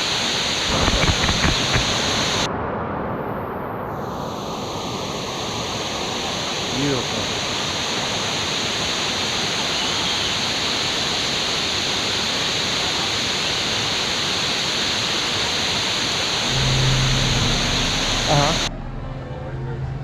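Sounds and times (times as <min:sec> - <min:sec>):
waterfall rushing: 0:00.0 - 0:02.5, 0:04.7 - 0:18.7
low hum: 0:16.4 - 0:20.0.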